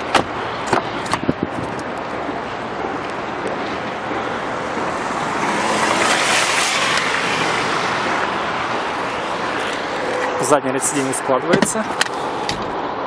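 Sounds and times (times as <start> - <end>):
road traffic hiss: 1.6 - 13.0
vehicle passing by: 3.7 - 11.4.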